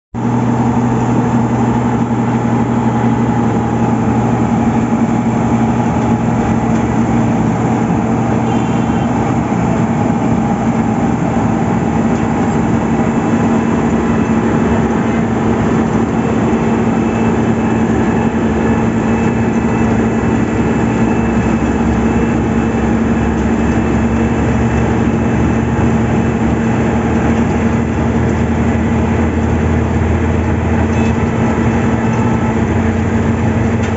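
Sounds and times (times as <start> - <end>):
heavy machinery engine running: 0.2 - 33.9.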